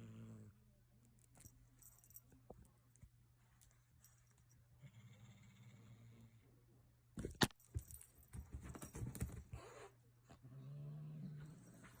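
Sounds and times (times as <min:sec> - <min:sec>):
cat growling: 0:09.6 - 0:12.0.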